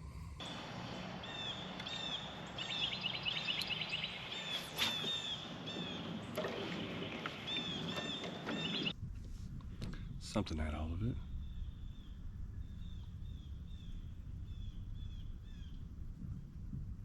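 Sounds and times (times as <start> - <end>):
small birds chirping: 0.0 - 17.0
river water flowing: 0.4 - 8.9.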